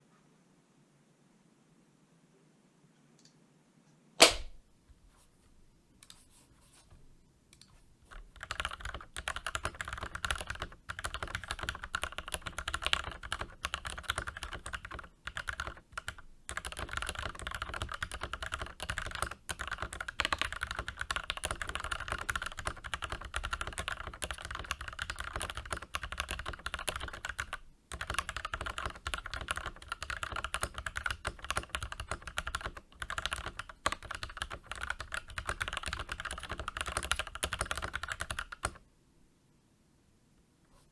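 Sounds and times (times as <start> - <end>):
mechanical keyboard typing: 7.6 - 38.8.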